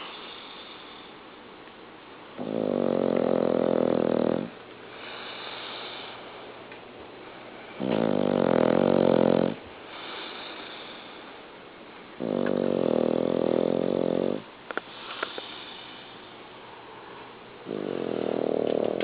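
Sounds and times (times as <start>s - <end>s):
quiet breathing: 0.0s - 1.4s, 4.4s - 7.9s, 9.5s - 11.6s, 14.2s - 19.0s
pet snoring: 2.4s - 6.1s, 7.8s - 11.0s, 12.2s - 14.5s, 17.6s - 19.0s.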